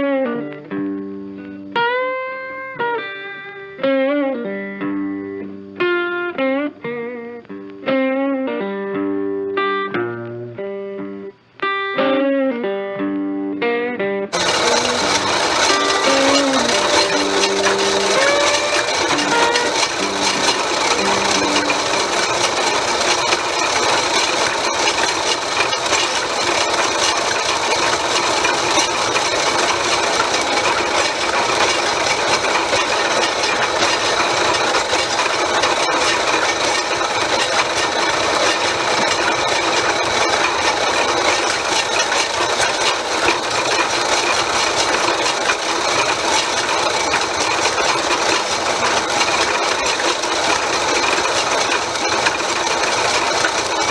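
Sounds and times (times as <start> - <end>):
lathe motor whirring: 14.4 - 53.9.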